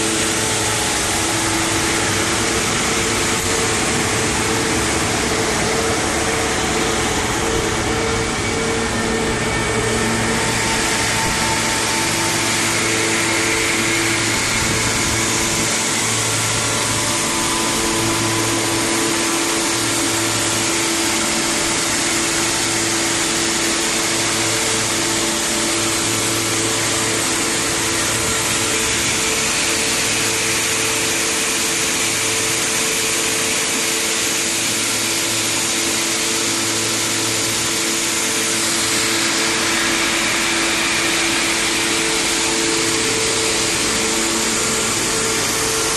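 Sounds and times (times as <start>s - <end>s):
shot blasting machine hissing: 9.8s - 45.9s.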